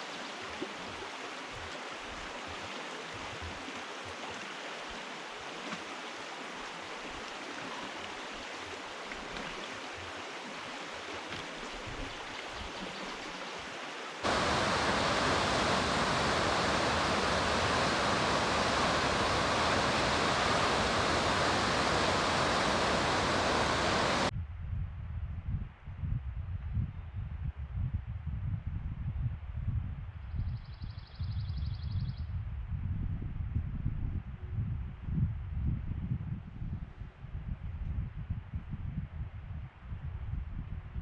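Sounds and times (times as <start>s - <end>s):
flowing water rushing: 0.0s - 24.3s
wind rumbling on microphone: 14.2s - 41.0s.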